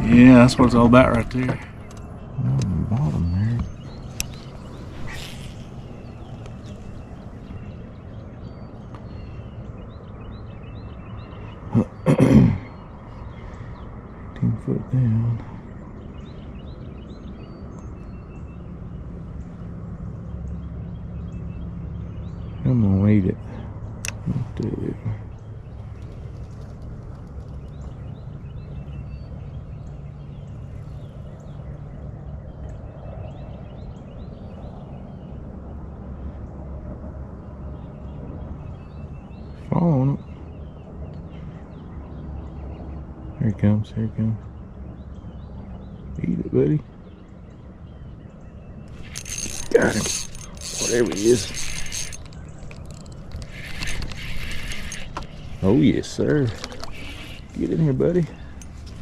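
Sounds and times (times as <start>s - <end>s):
steady low hum: 0.0s - 17.7s
birds chirping: 0.0s - 36.6s, 37.4s - 59.0s
person clearing throat: 11.8s - 12.7s.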